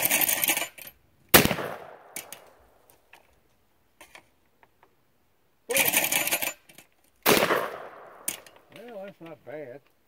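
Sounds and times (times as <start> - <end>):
shotgun shot: 1.3 - 2.2, 7.2 - 8.3.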